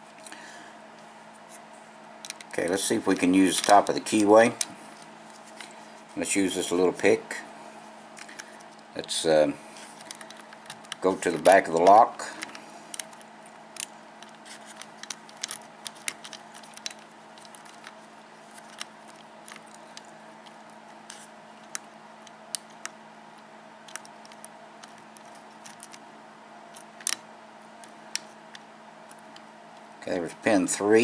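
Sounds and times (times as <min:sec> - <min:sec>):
lock pick ticks and scratches: 0:13.8 - 0:18.0.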